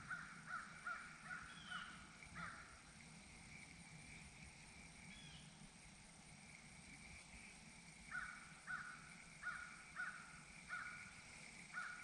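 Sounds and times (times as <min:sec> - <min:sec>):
bird calling: 0:00.0 - 0:02.8, 0:08.1 - 0:12.0
faint outdoor background: 0:00.0 - 0:12.0.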